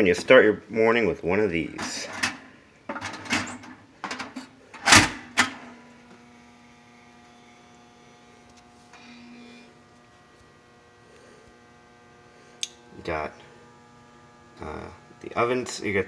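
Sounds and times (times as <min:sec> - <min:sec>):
faint electrical hum: 0:00.0 - 0:16.0
metal clicks and clunks: 0:01.8 - 0:05.7.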